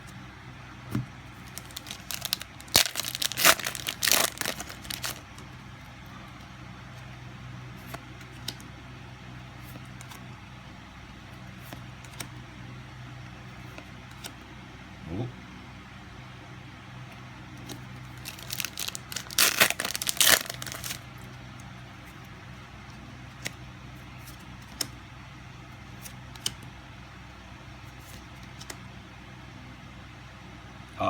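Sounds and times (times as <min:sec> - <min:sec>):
steady low hum: 0:00.0 - 0:31.0
wrappers crinkling: 0:01.4 - 0:05.4, 0:18.1 - 0:21.2.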